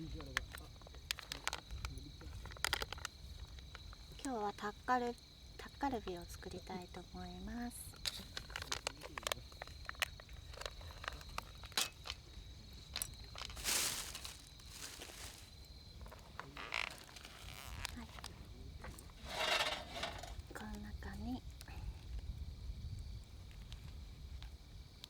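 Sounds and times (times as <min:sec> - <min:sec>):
insect chirping: 0:00.0 - 0:25.0
cooking gear clicking: 0:07.9 - 0:20.8.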